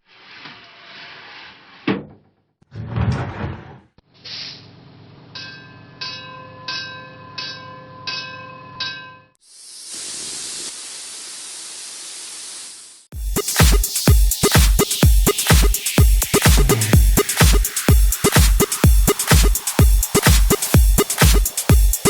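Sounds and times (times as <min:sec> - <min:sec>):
pressurised gas hissing: 0:09.4 - 0:13.2.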